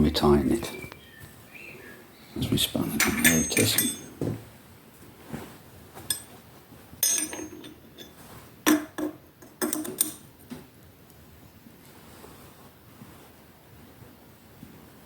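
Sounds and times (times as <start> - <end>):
spanner clinking on metal: 3.0 - 4.2, 6.1 - 6.4, 7.0 - 10.3.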